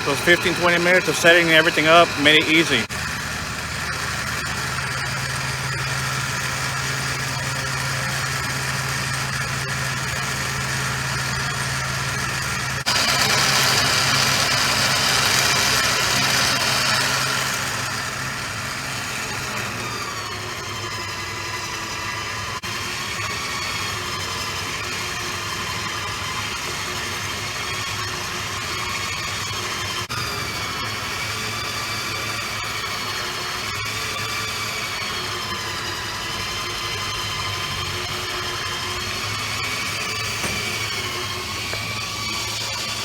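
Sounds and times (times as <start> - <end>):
wavering high whine: 0.0 - 18.7
vehicle engine idling: 0.0 - 20.6, 37.6 - 43.0.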